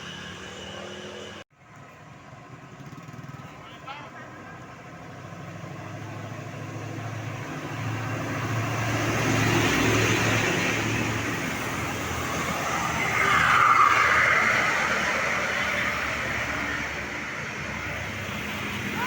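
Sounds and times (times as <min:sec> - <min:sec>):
tyres hissing on wet road: 0:07.9 - 0:17.7.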